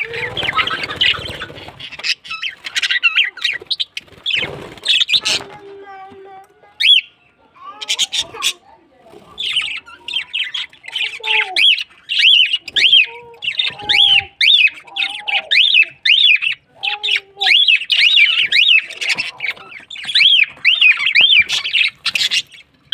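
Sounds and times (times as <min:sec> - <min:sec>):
small birds chirping: 0:00.0 - 0:22.9.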